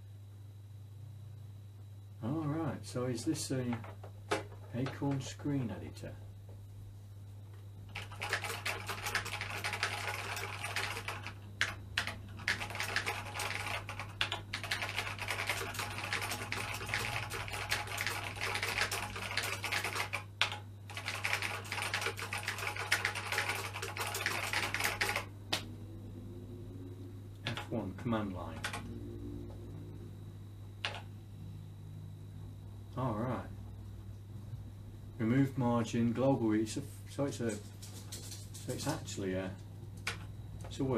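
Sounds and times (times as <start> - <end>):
steady low hum: 0.0 - 40.9
fast keyboard typing clicks: 7.9 - 25.3, 27.5 - 27.8, 28.5 - 28.9, 30.8 - 31.1, 40.0 - 40.3.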